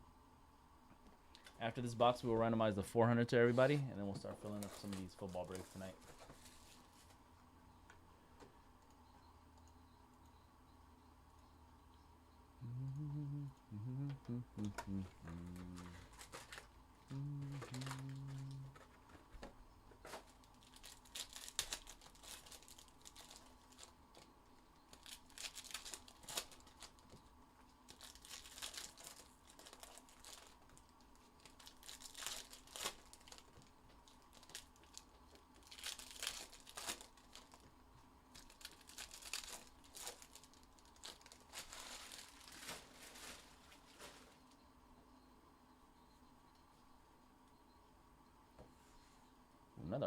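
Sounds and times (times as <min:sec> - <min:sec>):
foil wrappers crinkling and tearing: 0:04.4 - 0:06.8, 0:15.2 - 0:18.9, 0:20.0 - 0:24.3, 0:24.9 - 0:27.2, 0:27.8 - 0:37.7, 0:38.3 - 0:44.4.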